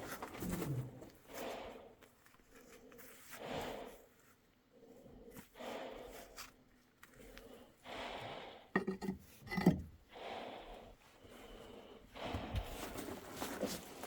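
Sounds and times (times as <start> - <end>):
heavy breathing: 1.1 - 9.1, 10.0 - 13.2
clunks and scrapes on rock: 8.8 - 9.9.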